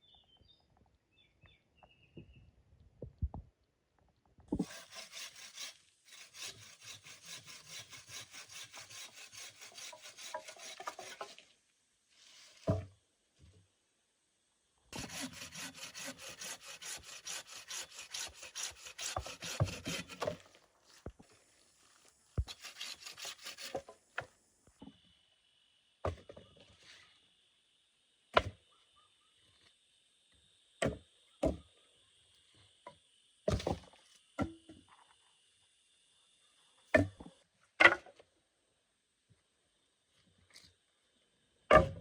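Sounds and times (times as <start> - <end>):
hand saw sawing wood: 4.6 - 11.4, 14.9 - 20.6, 22.4 - 24.0.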